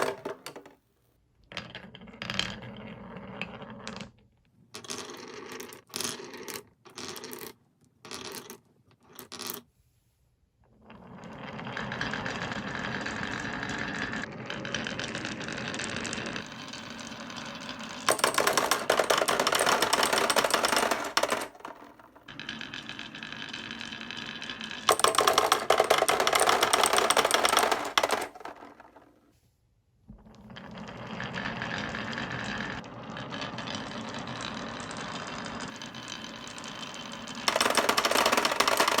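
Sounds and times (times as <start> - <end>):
marbles clacking: 0.0 - 0.7, 13.4 - 29.1, 33.4 - 39.0
marbles rolling on wooden track: 0.0 - 0.8, 1.5 - 4.2, 4.8 - 9.6, 10.8 - 29.2, 30.1 - 39.0.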